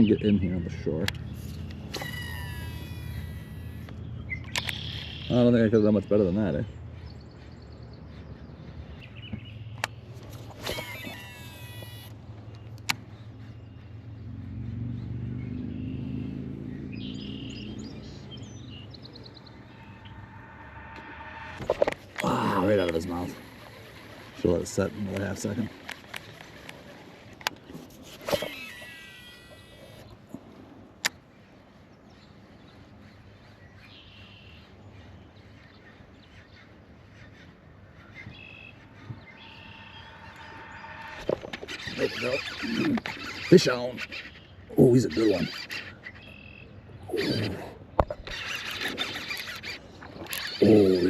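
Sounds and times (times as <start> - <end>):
bird chirping: 0.0 - 26.9, 31.3 - 51.0
low mechanical hum: 0.0 - 51.0
outdoor background noise: 0.0 - 51.0
sharp click: 3.8 - 5.0.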